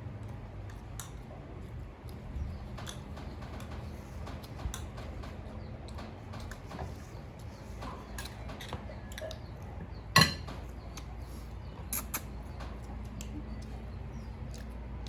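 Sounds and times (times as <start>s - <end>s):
steady low hum: 0.0s - 15.0s
dishes and utensils clattering: 2.8s - 11.0s.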